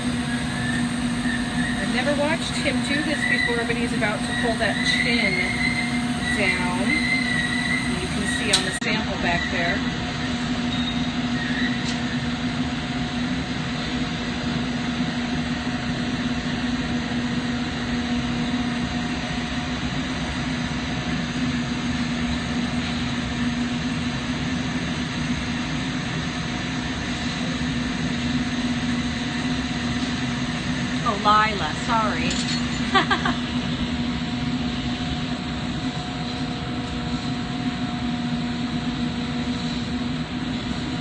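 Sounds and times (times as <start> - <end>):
torch flame roaring: 0.0 - 10.6
constant low hum: 0.0 - 41.0
ventilation running: 0.0 - 41.0.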